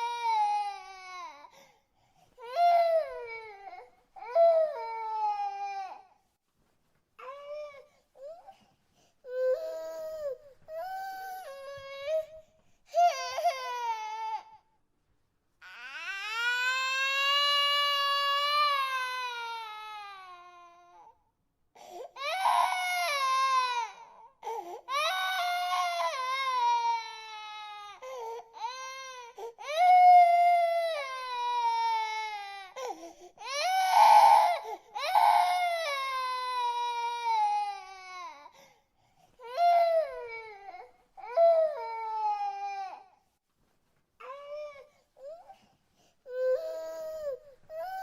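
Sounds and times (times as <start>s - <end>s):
infant crying: 0.0s - 1.6s, 2.4s - 6.2s, 9.2s - 14.6s, 15.6s - 21.1s, 21.8s - 38.6s, 46.2s - 48.0s.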